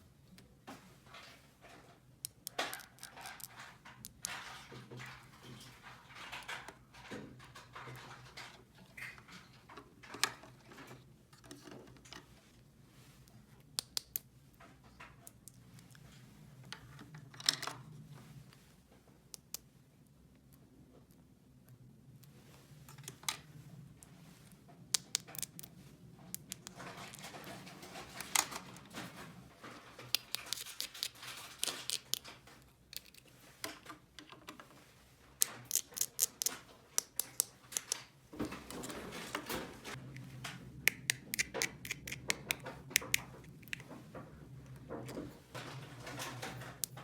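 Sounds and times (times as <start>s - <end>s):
plastic toy pieces clicking: 35.4s - 38.0s, 40.9s - 43.8s.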